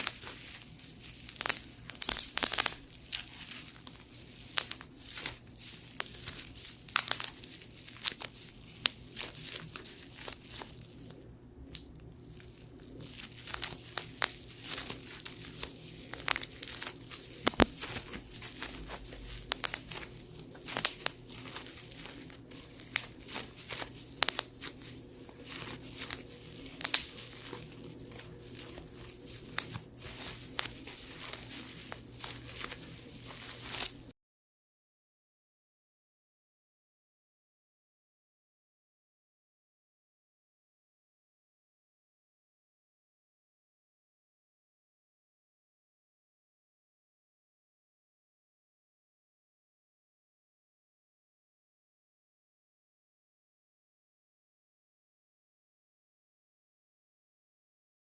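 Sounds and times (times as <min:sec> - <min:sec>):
bubble wrap popping: 0:00.0 - 0:34.1
plastic sheet crinkling: 0:00.0 - 0:34.1.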